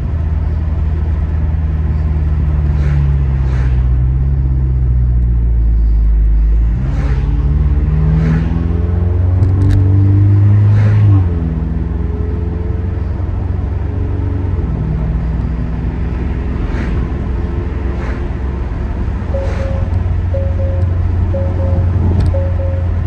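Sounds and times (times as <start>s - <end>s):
car exhaust droning: 11.8s - 23.0s.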